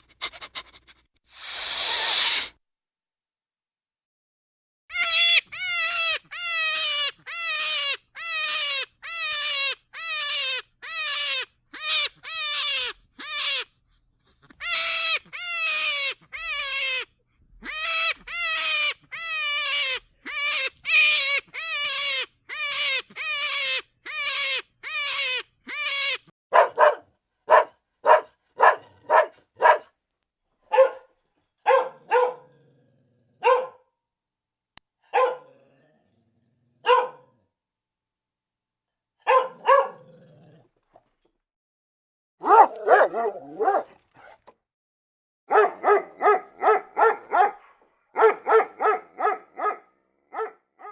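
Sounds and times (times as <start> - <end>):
dog yelping and barking: 4.9 - 13.7, 14.5 - 29.9, 30.7 - 32.6, 33.4 - 33.9, 35.0 - 35.7, 36.8 - 37.4, 39.2 - 40.2, 42.4 - 44.5, 45.5 - 50.9.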